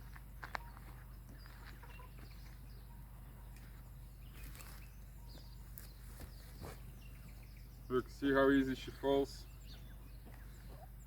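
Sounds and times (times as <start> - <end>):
faint bird chirps: 0.4 - 11.0.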